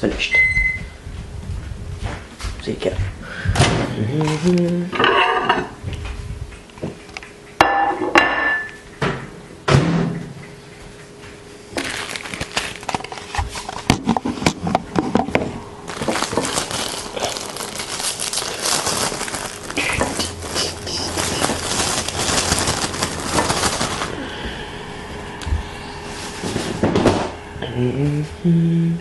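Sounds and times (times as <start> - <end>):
food packaging crinkling: 11.7 - 15.0, 15.8 - 24.2.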